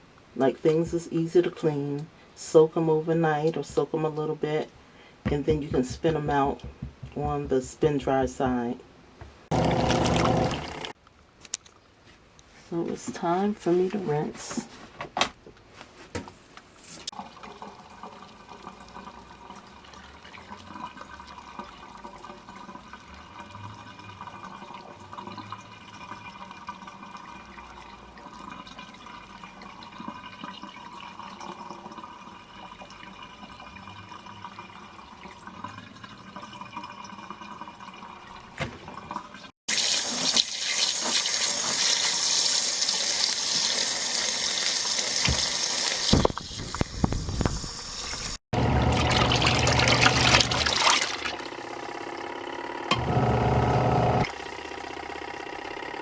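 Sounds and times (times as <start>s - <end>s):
water sloshing in washing machine: 9.5s - 11.0s, 45.2s - 52.2s
faint motor hum: 46.8s - 56.0s.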